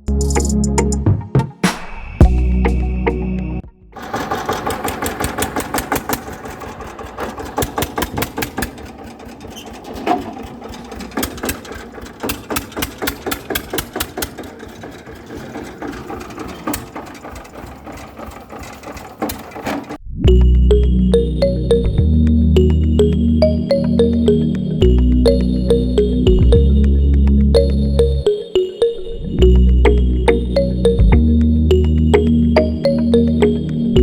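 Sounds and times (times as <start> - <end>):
rapid gear clicking: 4.0 - 20.0.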